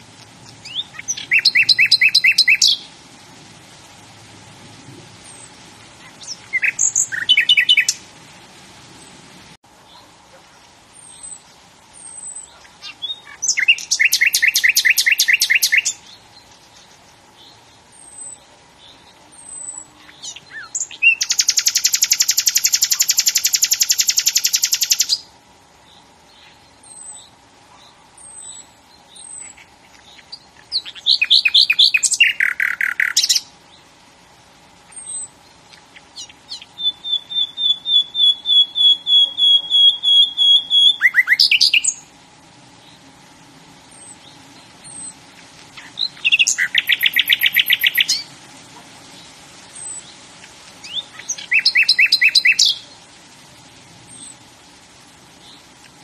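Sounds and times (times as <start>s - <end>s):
birds singing trilled songs: 0.0s - 3.0s, 5.1s - 8.2s, 10.9s - 34.0s, 34.8s - 43.1s, 43.8s - 48.4s, 49.1s - 53.1s, 54.0s - 54.5s, 55.3s - 55.9s
faint high chirps: 34.8s - 42.1s, 43.9s - 48.3s, 49.1s - 53.0s.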